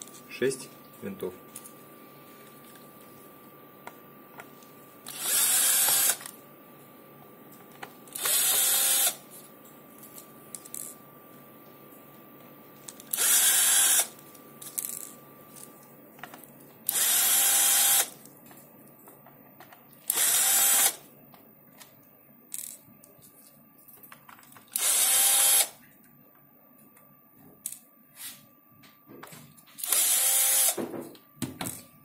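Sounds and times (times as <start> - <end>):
electric screwdriver whirring: 5.1 - 6.3, 8.1 - 9.2, 13.1 - 14.1, 16.9 - 18.2, 20.1 - 21.0, 24.7 - 25.8, 29.8 - 30.8.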